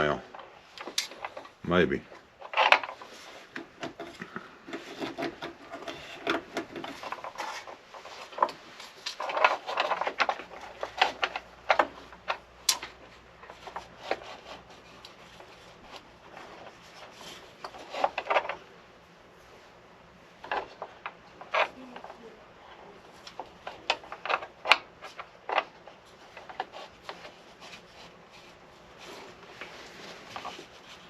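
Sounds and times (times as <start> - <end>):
rubbing of wooden pen blank: 2.5 - 12.4, 13.0 - 18.5, 23.0 - 31.0.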